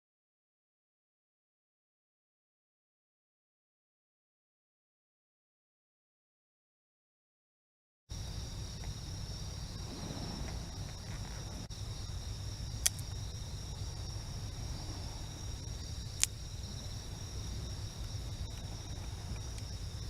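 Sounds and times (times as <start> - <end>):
crickets chirping: 8.1 - 20.0
waves on the shore: 8.2 - 20.0
sharp clicks: 12.8 - 13.2, 16.1 - 16.4.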